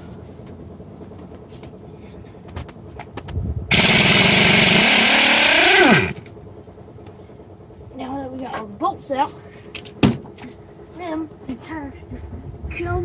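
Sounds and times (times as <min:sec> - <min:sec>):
impact wrench hammering: 0:03.7 - 0:06.2.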